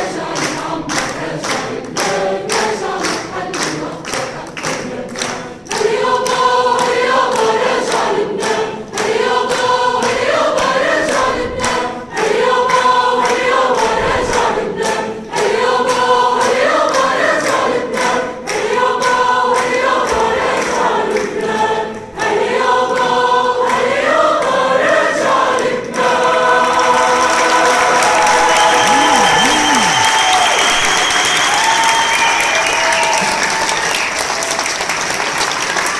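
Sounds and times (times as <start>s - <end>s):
choir singing: 0.0s - 34.2s.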